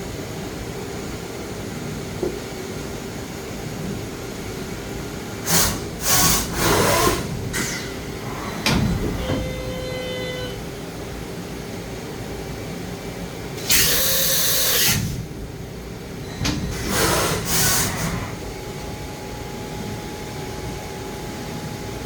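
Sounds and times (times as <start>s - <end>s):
steady machine whine: 7.3s - 11.8s.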